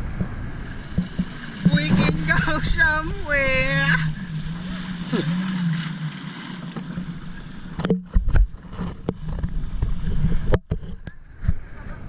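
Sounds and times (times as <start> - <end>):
motorboat engine running: 0.0 - 12.0
wind rumbling on microphone: 0.0 - 12.0
sharp knocks: 0.1 - 2.3.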